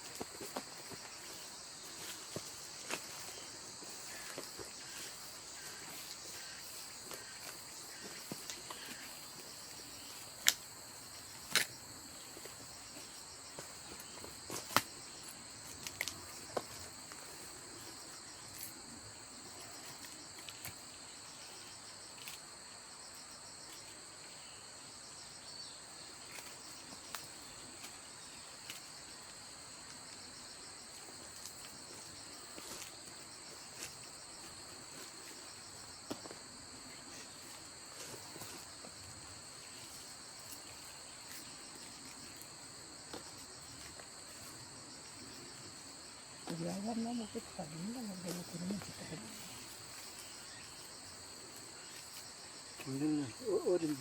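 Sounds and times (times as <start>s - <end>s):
crickets chirping: 0.0s - 54.0s.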